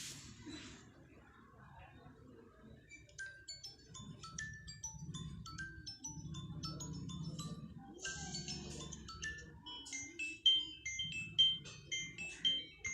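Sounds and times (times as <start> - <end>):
bell-like chiming music: 3.0 - 12.9.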